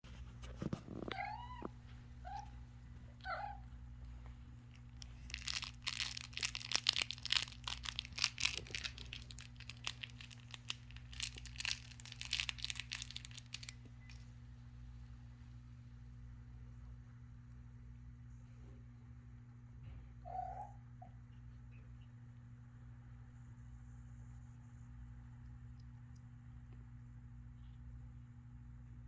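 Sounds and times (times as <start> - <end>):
crinkling and crunching: 0.1 - 14.4
kittens mewing: 0.8 - 3.8.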